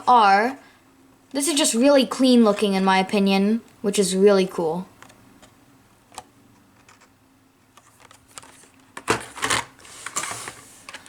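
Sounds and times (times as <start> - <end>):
packaging rustling and clatter: 7.8 - 11.0.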